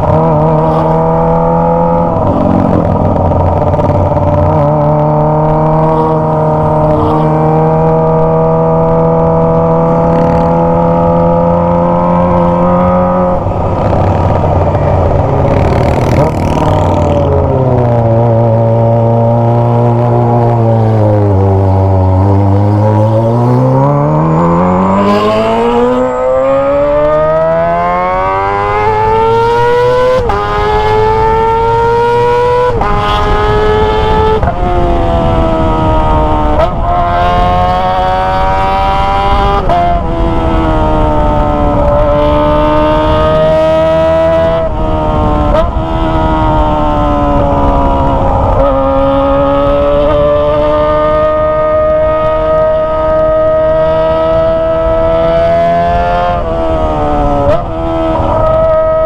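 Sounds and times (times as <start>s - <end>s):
motorcycle engine revving: 0.0s - 59.0s.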